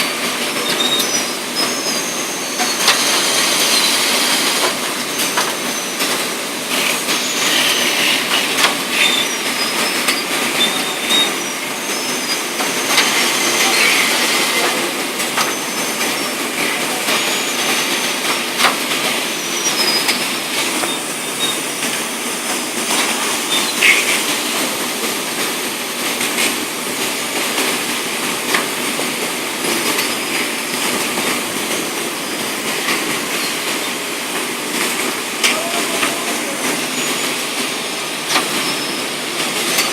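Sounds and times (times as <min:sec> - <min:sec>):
bagging machine mechanical din: 0:00.0 - 0:39.9
short high squeals: 0:05.0 - 0:14.7, 0:15.4 - 0:18.6.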